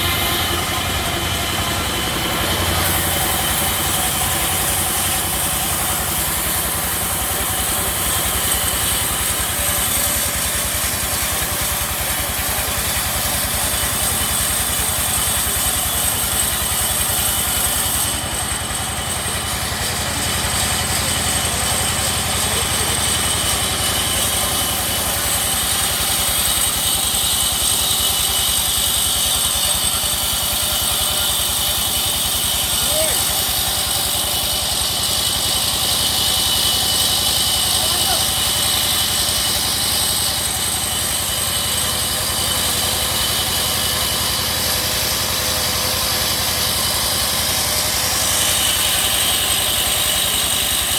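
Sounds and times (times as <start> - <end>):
sawmill machinery drone: 0.0 - 50.9.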